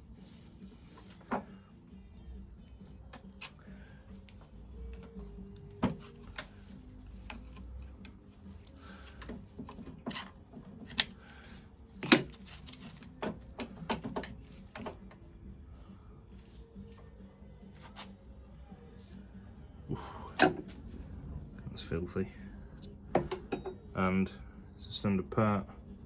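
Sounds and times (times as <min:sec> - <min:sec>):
metallic clinks and knocks: 0:23.1 - 0:23.9.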